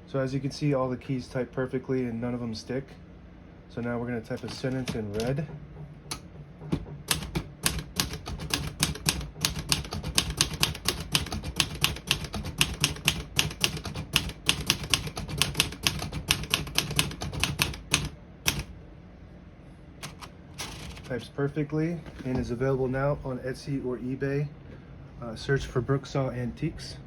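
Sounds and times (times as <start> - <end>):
manual typewriter typing: 4.3 - 5.4, 7.0 - 18.7, 20.0 - 21.2.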